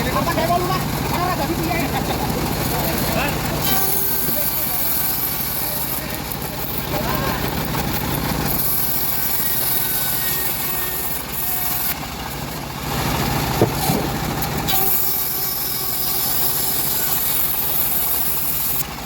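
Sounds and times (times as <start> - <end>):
bandsaw sawmill drone: 0.0 - 19.0
sharp knocks: 13.5 - 14.3.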